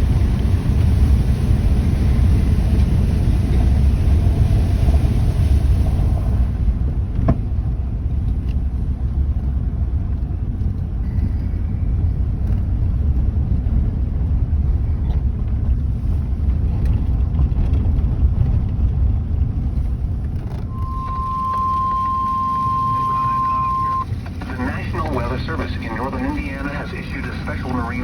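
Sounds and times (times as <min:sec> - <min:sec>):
car road and wind noise: 0:00.0 - 0:28.0
weather radio alert tone: 0:20.7 - 0:28.0.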